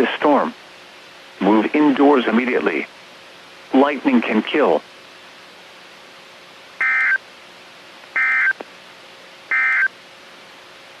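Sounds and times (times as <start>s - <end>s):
radio hiss: 3.7s - 4.8s
short data tone bursts: 6.8s - 7.2s, 8.2s - 8.6s, 9.5s - 9.9s.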